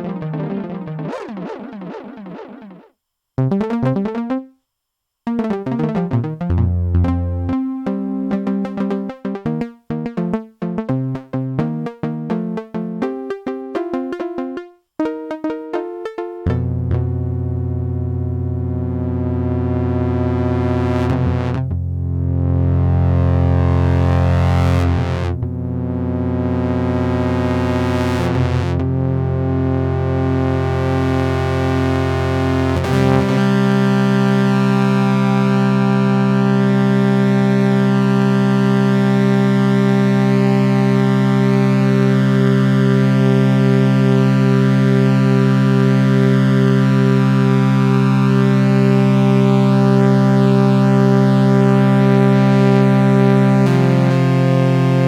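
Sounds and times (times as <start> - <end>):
synthesizer note sequences: 0.0 - 4.5, 5.3 - 21.7
synthesizer chords: 0.0 - 4.6, 5.3 - 55.0.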